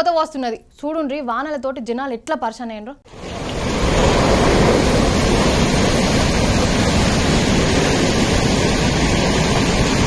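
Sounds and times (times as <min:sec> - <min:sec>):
heavy rainwater rushing: 0:03.1 - 0:10.0.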